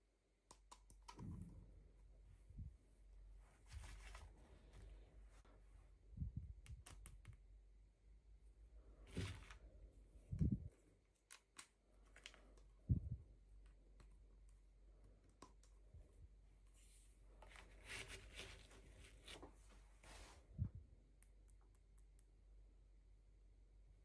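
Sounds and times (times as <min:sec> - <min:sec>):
small clicks and taps: 0:00.4 - 0:01.5, 0:06.6 - 0:07.5, 0:11.1 - 0:12.8, 0:13.6 - 0:16.0.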